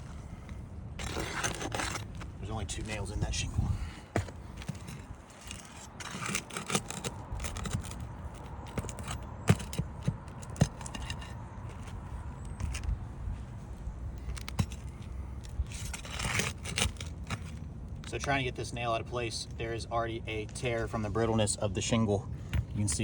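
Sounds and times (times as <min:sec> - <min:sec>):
metal tool scraping shingles: 0:01.0 - 0:12.9, 0:14.2 - 0:18.2.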